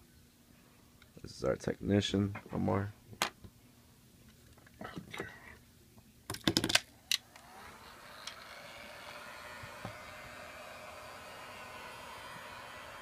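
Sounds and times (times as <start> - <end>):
hot-air blower hissing: 7.0 - 13.0.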